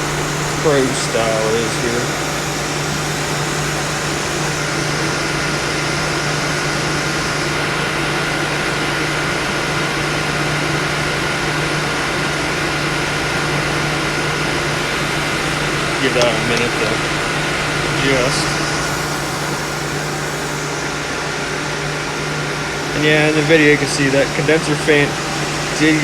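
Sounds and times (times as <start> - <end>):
air conditioner blowing air: 0.0 - 26.0
compressor low hum: 0.0 - 26.0.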